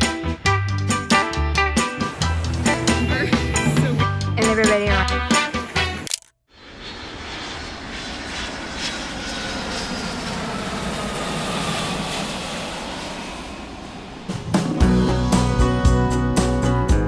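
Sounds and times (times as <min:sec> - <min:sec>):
airplane engine rush with whine: 0:01.7 - 0:14.8.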